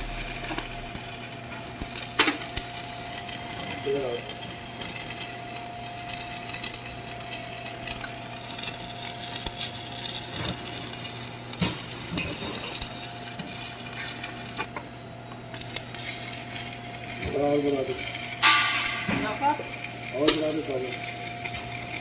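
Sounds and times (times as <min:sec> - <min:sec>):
steady hum: 0:00.0 - 0:03.3.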